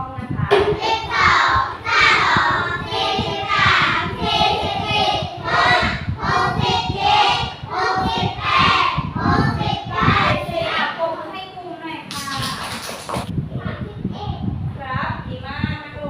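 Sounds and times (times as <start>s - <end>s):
children chanting in unison: 0.6s - 11.0s.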